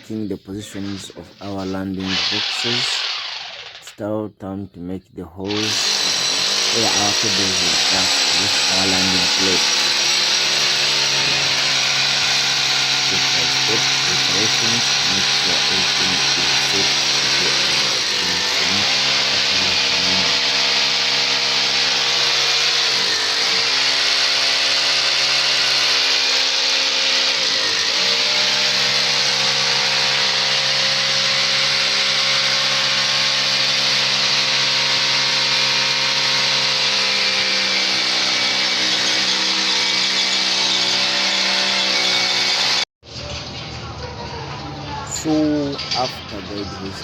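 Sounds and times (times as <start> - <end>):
electric drill boring: 0.8 - 3.9, 5.5 - 42.9.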